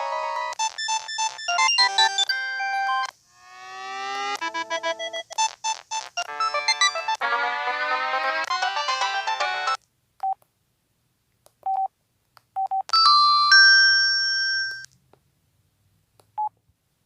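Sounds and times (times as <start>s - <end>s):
phone ringtone melody: 0.0s - 7.3s, 8.5s - 9.8s, 13.0s - 14.8s
held multi-tone chime: 13.0s - 14.9s.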